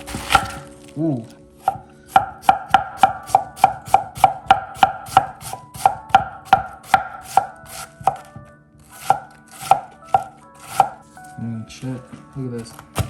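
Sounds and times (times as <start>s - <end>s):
knife chopping cabbage on board: 0.0s - 0.7s, 1.6s - 11.2s, 12.6s - 13.0s.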